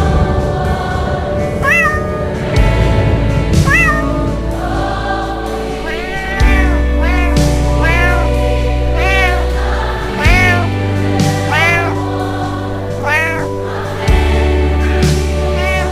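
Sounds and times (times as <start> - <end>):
choir-like background music: 0.0 - 15.9
cat meowing: 1.6 - 2.3, 3.7 - 4.2, 5.8 - 9.6, 10.2 - 10.7, 11.5 - 12.0, 13.0 - 13.6, 15.6 - 15.9.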